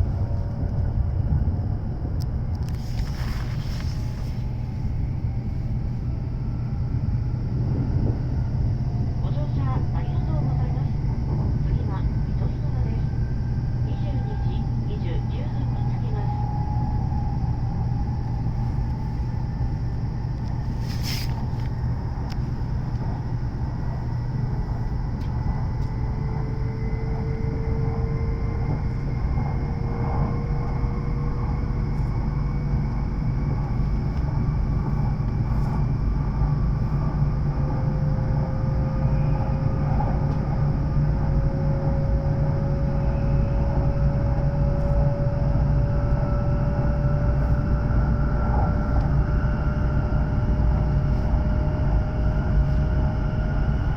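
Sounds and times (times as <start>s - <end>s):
train interior low rumble: 0.0s - 53.9s
faint rising whine: 15.6s - 53.9s.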